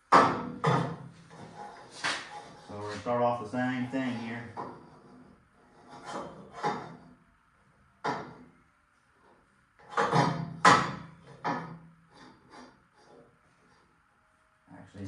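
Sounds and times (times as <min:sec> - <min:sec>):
steel tubing knocking and clunking: 0:00.0 - 0:02.5, 0:06.0 - 0:07.0, 0:08.0 - 0:08.5, 0:09.8 - 0:11.8.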